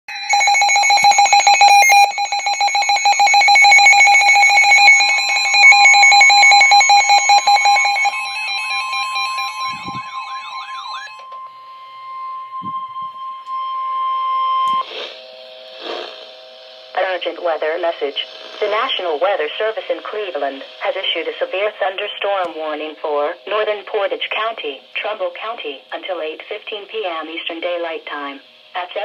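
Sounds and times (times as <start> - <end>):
pulsing electronic alarm beep: 0.1 - 15.7
steady warning tone: 0.1 - 29.0.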